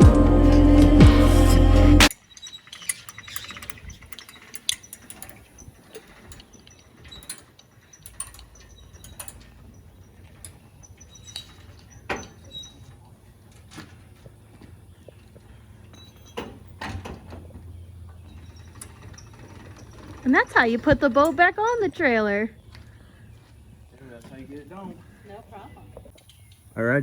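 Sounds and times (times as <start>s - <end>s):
background music: 0.0s - 2.1s
ratchet clicking: 2.1s - 10.5s
faint metallic clicks and knocks: 2.3s - 12.5s.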